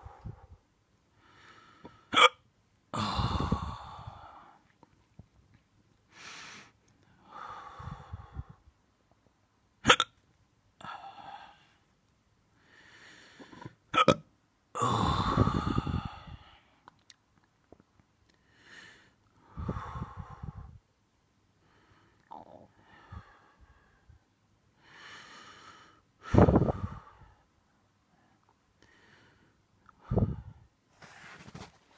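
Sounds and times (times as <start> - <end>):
breathy voiced sounds: 0.0 - 0.6, 2.9 - 4.8, 6.1 - 8.7, 10.8 - 11.9, 12.6 - 13.9, 14.8 - 20.8, 21.6 - 27.5
person hiccuping: 2.1 - 2.4, 9.8 - 10.2, 13.9 - 14.2.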